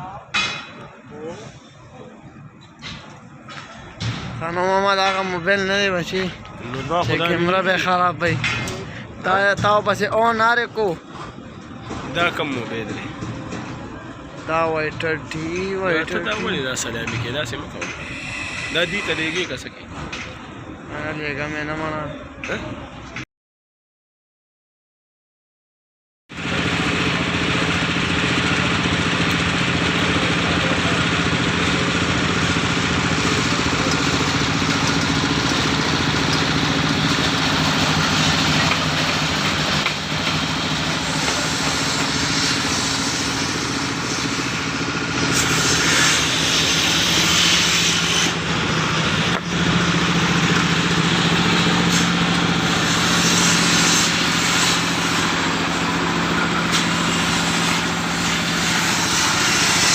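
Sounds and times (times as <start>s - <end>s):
engine humming: 26.4s - 59.9s.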